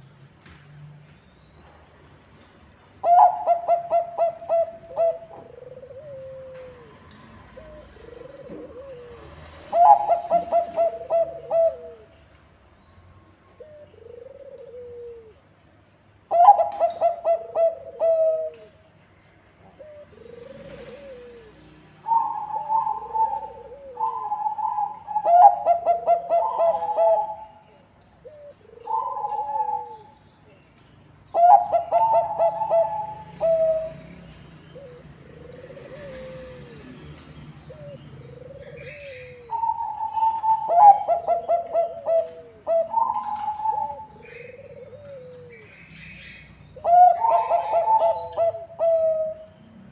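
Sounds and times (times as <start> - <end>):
dove stuttering coos: 3.0 - 12.1, 19.8 - 27.6, 31.4 - 45.7, 46.8 - 49.4
soft falling dove coos: 3.0 - 12.1, 13.5 - 15.5, 16.3 - 18.9, 19.6 - 30.2, 31.3 - 45.8, 46.8 - 49.5.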